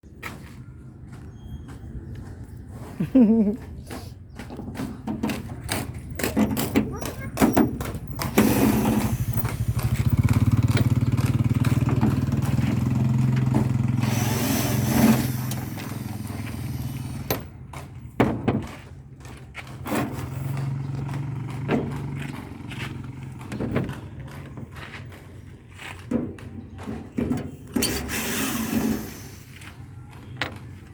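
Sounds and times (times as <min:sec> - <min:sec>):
small engine idling: 0:08.1 - 0:17.5, 0:20.2 - 0:24.5.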